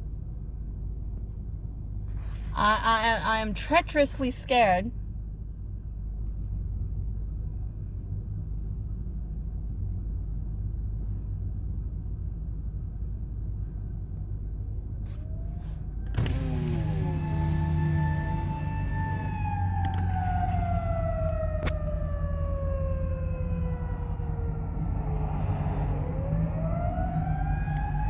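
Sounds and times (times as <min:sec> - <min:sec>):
low hum inside a car: 0:00.0 - 0:28.0
warning siren wailing: 0:15.2 - 0:28.0.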